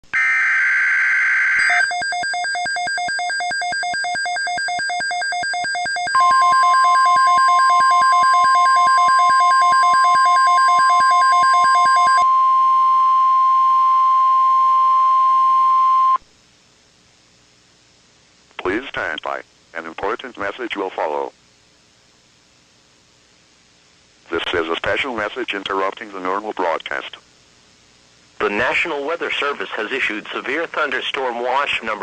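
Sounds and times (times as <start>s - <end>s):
steady warning alarm tone: 0.2s - 16.2s.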